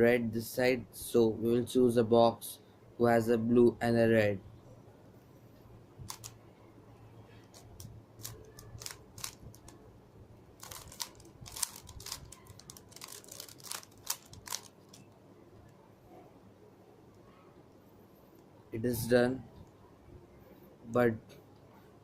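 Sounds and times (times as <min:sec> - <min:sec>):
rubik's cube clicking: 0:06.0 - 0:06.4, 0:07.4 - 0:09.8, 0:10.6 - 0:15.2.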